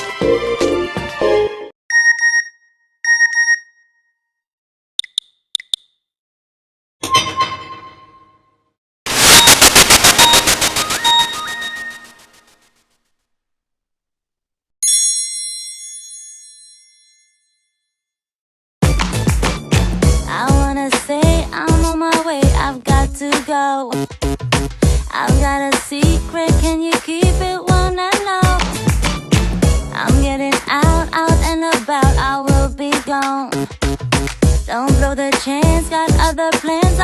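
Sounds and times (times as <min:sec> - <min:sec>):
short steady beeps: 0:01.9 - 0:03.8
bell-like ringtone chime: 0:14.8 - 0:18.0.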